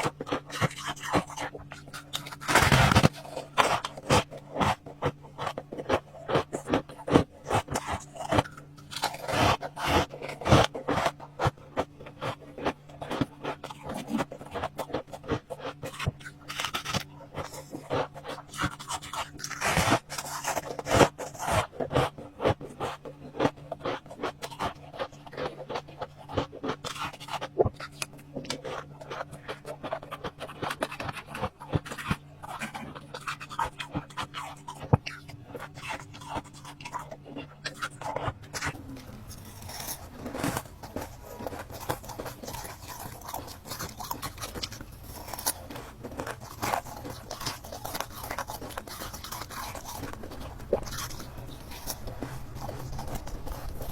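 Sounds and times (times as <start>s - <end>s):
ice crunching between teeth: 0.0s - 53.9s
low hum: 38.0s - 53.9s.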